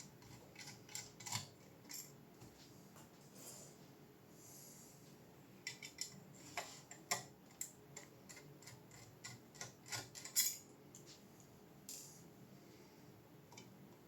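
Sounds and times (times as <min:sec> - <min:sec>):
small tools clicking and tapping: 0:00.1 - 0:02.2, 0:05.6 - 0:11.1.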